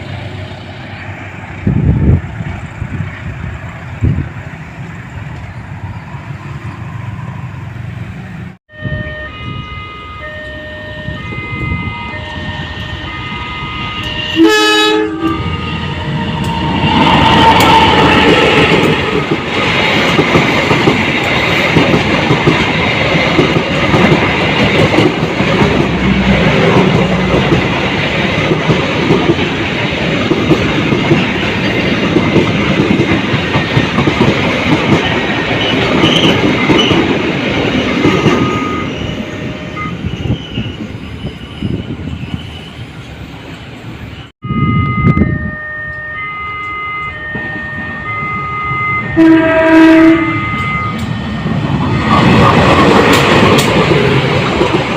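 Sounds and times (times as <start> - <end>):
train passing: 0.0 - 54.9
locomotive horn blasts: 8.7 - 18.0, 44.4 - 51.1.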